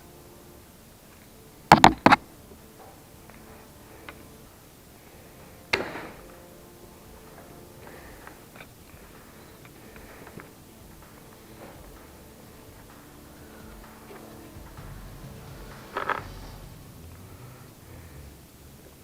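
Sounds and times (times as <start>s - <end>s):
tools knocking: 1.7s - 2.2s.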